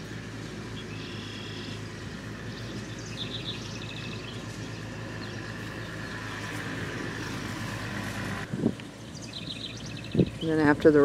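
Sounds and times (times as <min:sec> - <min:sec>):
tractor engine droning: 0:00.0 - 0:11.0
bird chirping: 0:00.7 - 0:06.6, 0:09.0 - 0:10.7.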